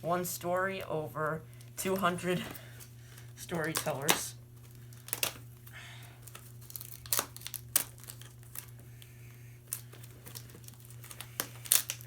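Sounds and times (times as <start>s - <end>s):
packaging crinkling and tearing: 1.5s - 12.0s
sharp crackles: 9.7s - 12.0s.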